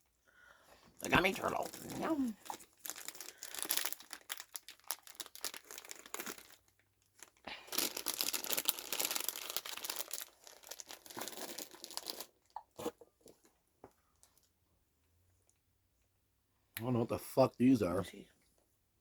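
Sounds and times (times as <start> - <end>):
snack packaging crinkling: 1.0 - 12.9.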